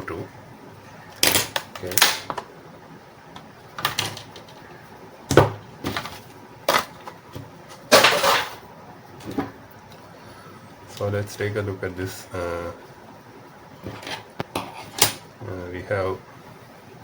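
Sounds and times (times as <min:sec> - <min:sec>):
tool kit scrape: 0:13.8 - 0:15.1.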